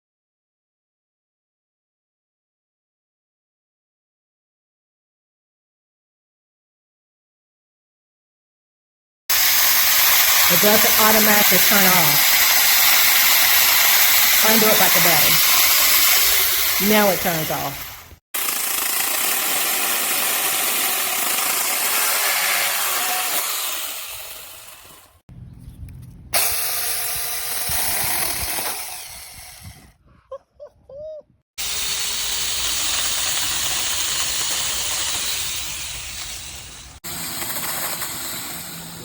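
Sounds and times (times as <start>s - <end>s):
small chainsaw running: 9.3s - 25.2s, 26.4s - 30.0s, 31.6s - 39.0s.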